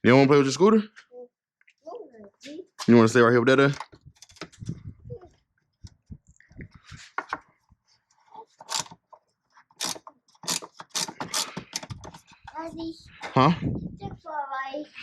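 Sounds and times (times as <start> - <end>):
hand tools clicking and rattling: 3.7 - 4.7, 8.6 - 12.6
metal parts scraping: 8.6 - 9.0, 9.7 - 12.5.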